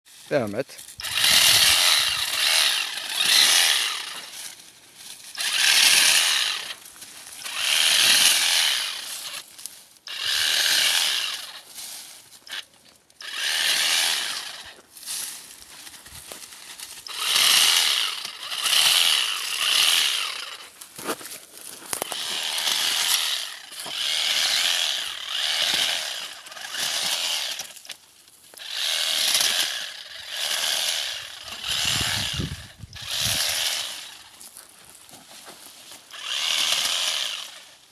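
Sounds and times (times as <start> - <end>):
electric pruning machine motor whirring: 0.8 - 9.5, 10.1 - 11.7, 12.5 - 14.8, 16.3 - 21.2, 21.8 - 34.4, 35.9 - 37.9.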